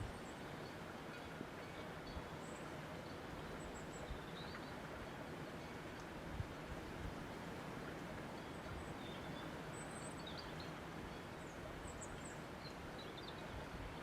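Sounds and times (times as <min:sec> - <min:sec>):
steady wind: 0:00.0 - 0:14.0.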